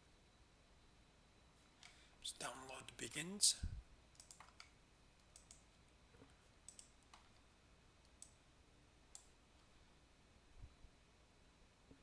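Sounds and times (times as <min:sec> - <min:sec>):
faint clicks: 0:04.1 - 0:05.6, 0:06.2 - 0:07.4.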